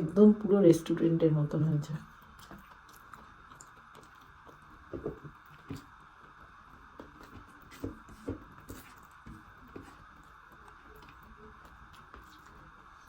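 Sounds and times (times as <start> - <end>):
chewing mouth clicks and smacks: 2.2 - 5.9.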